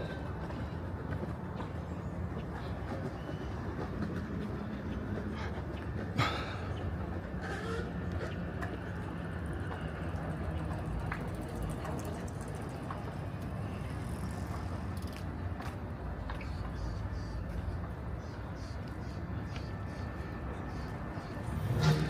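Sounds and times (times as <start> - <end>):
low vehicle rumble: 20.1 - 22.0.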